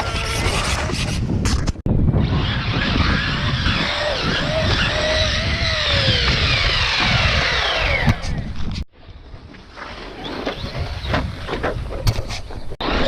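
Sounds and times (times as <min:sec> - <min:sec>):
electric motors whining: 0:02.2 - 0:08.5.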